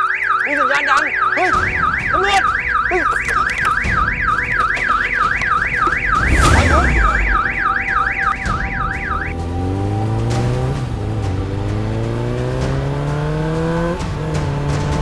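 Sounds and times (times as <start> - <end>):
car alarm warbling: 0.0 - 10.6
heavy thud with low rumble: 6.0 - 9.0.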